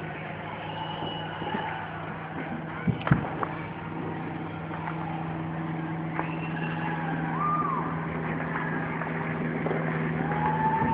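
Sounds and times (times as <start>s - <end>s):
steady low hum: 0.0s - 10.9s
firework whistle: 0.4s - 2.1s, 6.0s - 9.0s, 10.1s - 10.9s
firework pops: 2.8s - 3.6s
firework bang: 2.8s - 3.7s.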